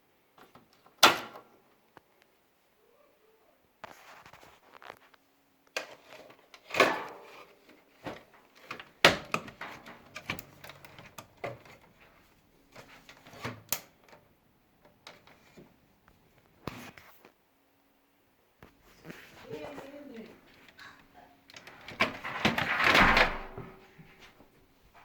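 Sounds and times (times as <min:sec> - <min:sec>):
knocks and scrapes of parts: 0:05.8 - 0:13.7, 0:21.6 - 0:24.2.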